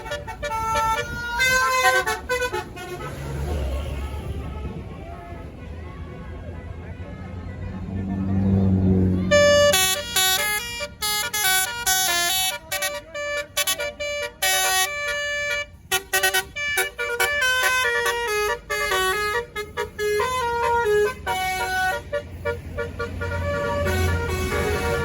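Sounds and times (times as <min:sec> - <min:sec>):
musical air horn playing a tune: 0:00.0 - 0:04.8, 0:09.0 - 0:25.0
deep engine rumble: 0:00.0 - 0:25.0.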